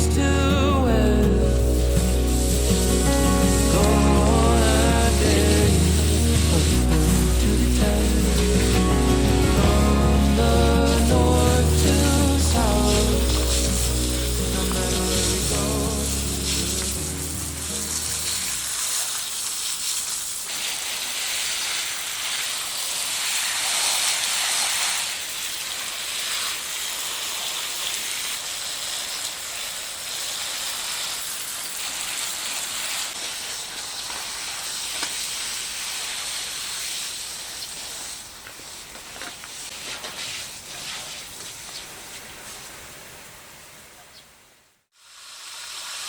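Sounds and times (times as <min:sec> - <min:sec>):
water splashing into pond: 0:11.6 - 0:37.9.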